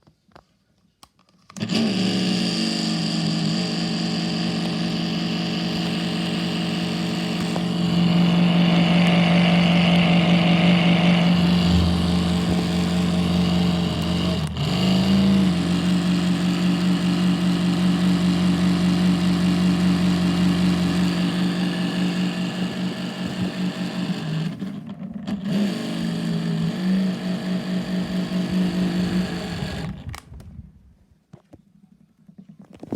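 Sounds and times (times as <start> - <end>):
desk fan pitched drone: 1.7 - 24.8, 25.5 - 30.6.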